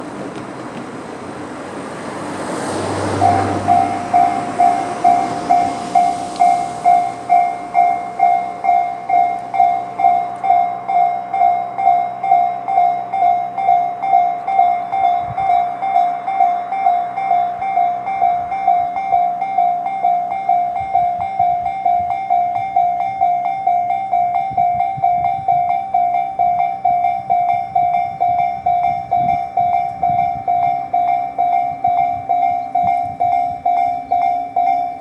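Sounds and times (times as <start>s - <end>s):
rush of noise: 0.0s - 19.6s
level crossing warning bell: 2.8s - 35.0s.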